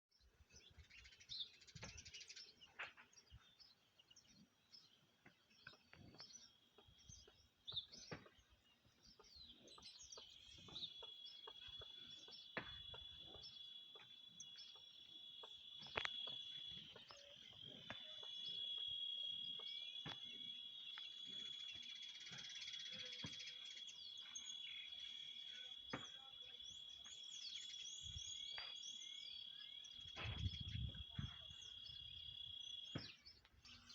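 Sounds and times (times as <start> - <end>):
bird chirps: 0.1 - 33.9
insect high-pitched trill: 10.2 - 32.9.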